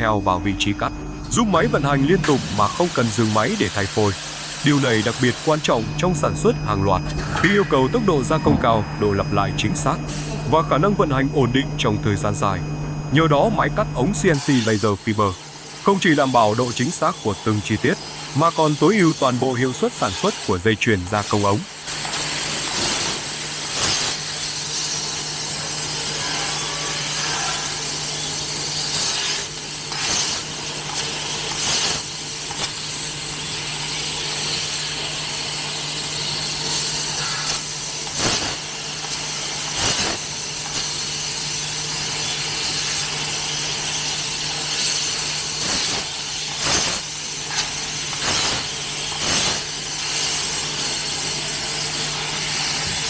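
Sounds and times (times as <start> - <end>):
machine low hum: 0.0 - 32.6
laser cutting machine hiss: 0.0 - 53.0.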